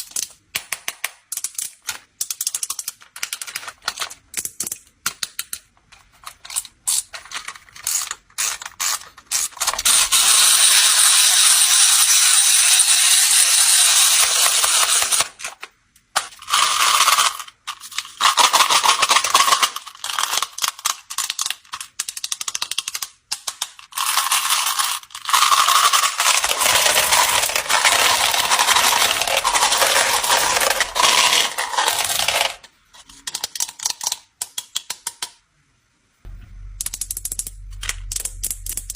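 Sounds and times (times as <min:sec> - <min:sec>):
hard candies pouring and clattering: 0:07.1 - 0:15.3, 0:16.2 - 0:22.8, 0:23.4 - 0:34.0
scattered clicks: 0:36.3 - 0:38.9.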